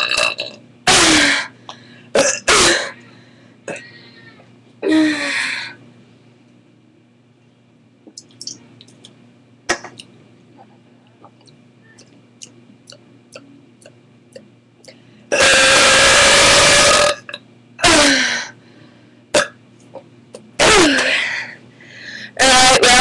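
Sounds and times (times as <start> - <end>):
girl burping loudly: 0.0 - 1.4, 2.2 - 3.0, 15.3 - 18.2.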